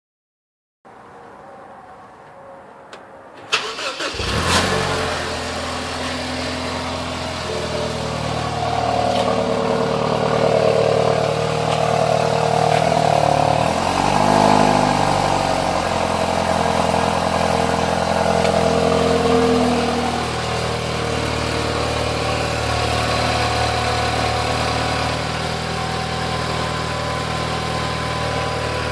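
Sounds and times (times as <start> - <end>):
car engine starting and idling: 3.4 - 28.9
whining tone: 3.6 - 28.9.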